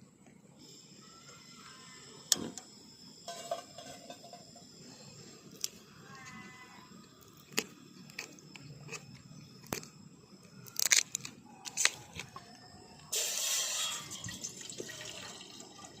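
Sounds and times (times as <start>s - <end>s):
clicks and crinkly handling: 7.2s - 12.4s
water being poured: 13.2s - 16.0s.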